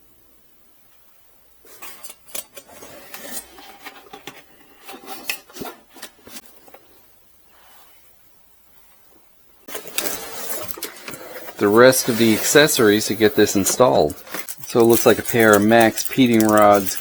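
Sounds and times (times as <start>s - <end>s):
packaging rustling: 9.7s - 17.0s.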